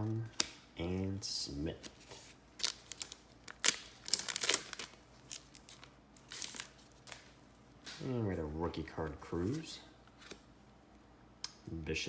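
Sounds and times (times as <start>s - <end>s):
foil wrapper tearing and crinkling: 2.5s - 7.4s.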